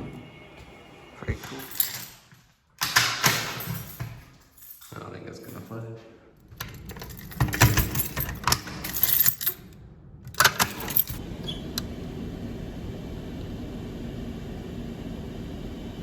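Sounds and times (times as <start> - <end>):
metallic jingling and clattering: 1.4 - 11.2.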